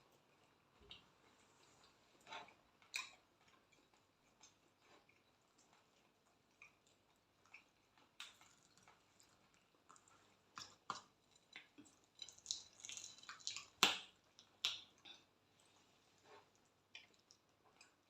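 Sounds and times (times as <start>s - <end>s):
faint chewing: 0.0s - 18.0s
wet mouth clicks and smacks: 7.5s - 15.2s.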